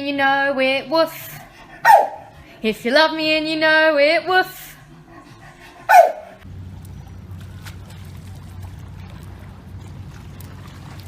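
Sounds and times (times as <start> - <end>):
low hum with faint hiss: 0.0 - 11.0
dog woof: 1.8 - 2.3, 5.9 - 6.4.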